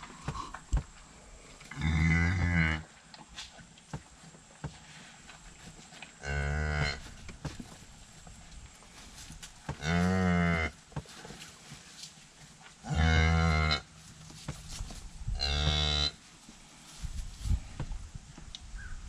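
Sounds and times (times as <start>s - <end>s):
cow mooing: 1.7s - 2.9s, 6.2s - 7.0s, 9.8s - 10.7s, 12.9s - 13.8s, 15.4s - 16.2s.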